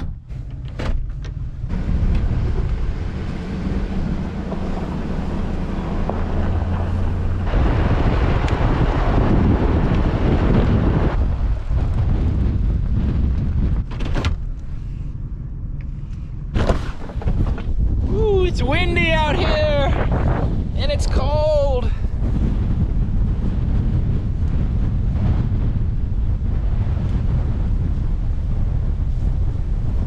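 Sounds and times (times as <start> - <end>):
low engine-like hum: 0.0 - 18.4
wind buffeting microphone: 0.0 - 30.0.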